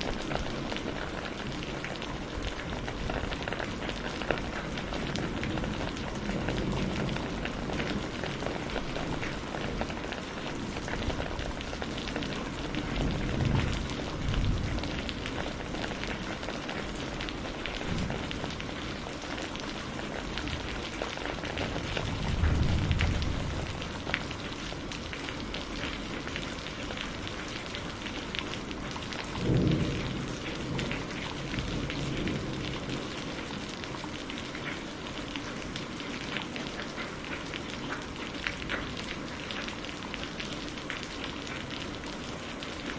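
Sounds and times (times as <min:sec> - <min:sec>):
thunder rumbling: 0:00.0 - 0:27.3, 0:28.6 - 0:33.6
heavy rain hissing and pattering: 0:00.0 - 0:42.9.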